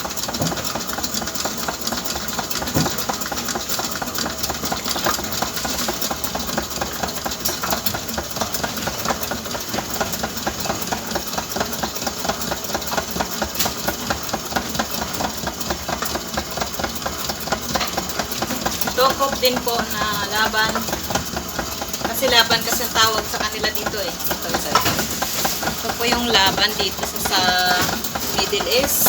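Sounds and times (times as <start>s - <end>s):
electric mixer running: 0.0s - 29.0s
rapid regular ticking: 14.4s - 24.7s.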